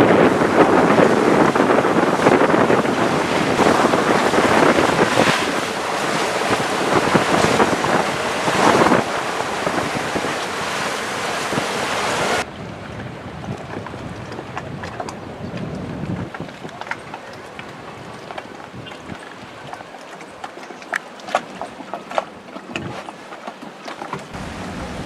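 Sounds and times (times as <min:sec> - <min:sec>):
wind buffeting microphone: 0:00.0 - 0:20.5, 0:24.3 - 0:25.0
sea water rushing along hull: 0:00.0 - 0:25.0.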